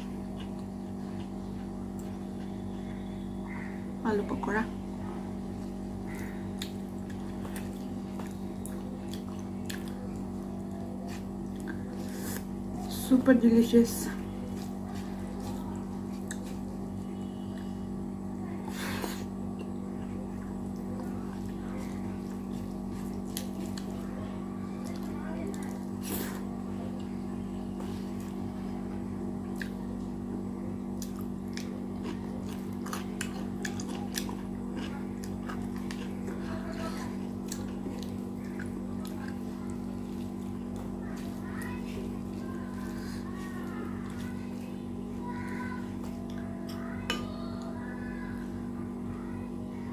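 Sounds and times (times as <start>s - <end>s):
person chewing with mouth clicks: 0.0s - 2.5s, 6.5s - 10.3s, 15.4s - 16.7s, 29.4s - 29.8s, 31.0s - 41.4s
crunchy chewing: 0.0s - 3.9s, 5.2s - 12.9s, 14.2s - 18.0s, 18.6s - 28.7s, 29.4s - 30.1s, 30.8s - 48.6s
steady low hum: 0.0s - 49.9s.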